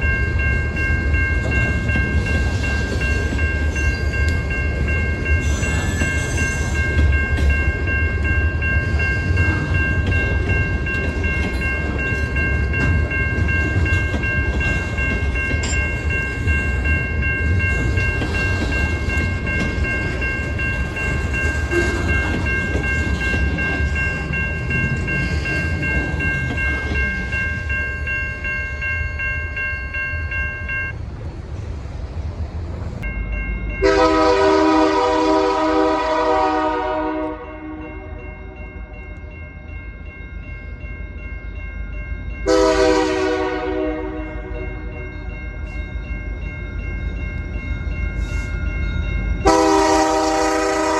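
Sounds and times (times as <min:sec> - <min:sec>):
train rumbling by: 0:00.0 - 0:29.2, 0:29.9 - 0:41.3, 0:42.0 - 0:50.9
high-pitched ringing tones: 0:00.0 - 0:31.0.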